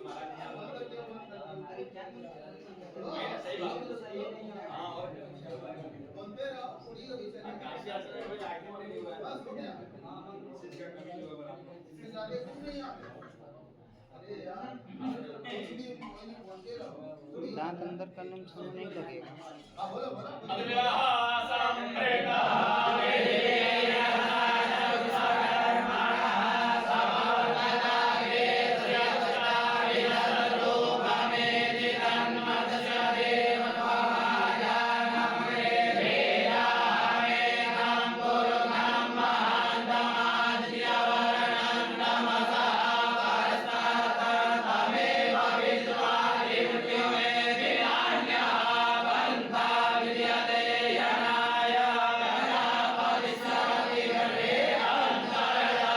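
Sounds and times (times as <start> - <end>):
many voices chanting in unison: 20.4 - 55.9.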